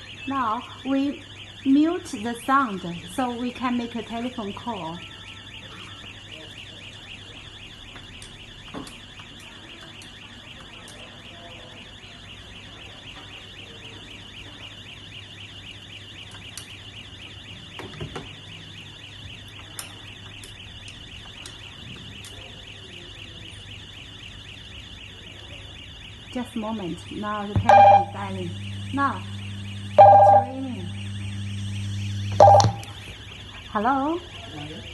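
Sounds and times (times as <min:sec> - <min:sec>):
fire alarm electronic tone: 0:00.0 - 0:34.9
steady low hum: 0:25.7 - 0:33.6
clicks: 0:29.6 - 0:33.0.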